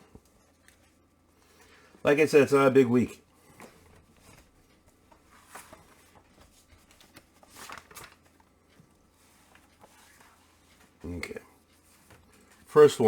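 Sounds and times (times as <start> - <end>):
paper rustling and handling: 3.5 - 13.0.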